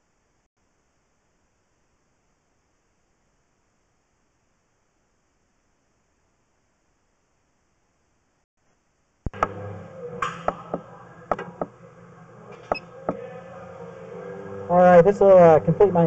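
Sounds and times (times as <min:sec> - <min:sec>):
faint electronic hiss: 0:00.0 - 0:10.2
low steady hum: 0:08.8 - 0:16.0
equipment clicks and knocks: 0:10.2 - 0:11.7.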